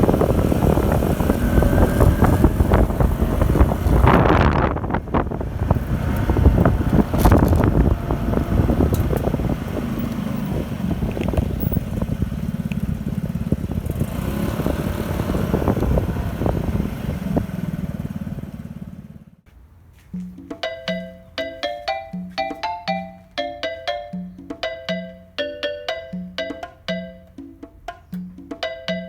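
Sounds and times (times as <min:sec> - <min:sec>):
scooter engine running: 0:00.0 - 0:19.4.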